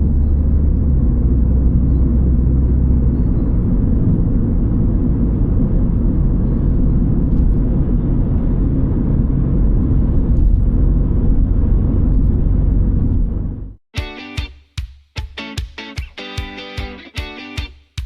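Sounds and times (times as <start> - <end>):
car road and engine rumble: 0.0 - 13.8.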